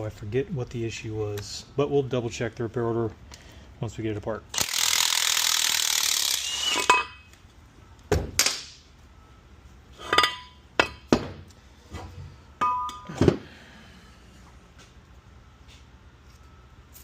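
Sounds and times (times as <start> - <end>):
power ratchet running: 4.6 - 6.9
metal tools clinking: 10.0 - 11.1.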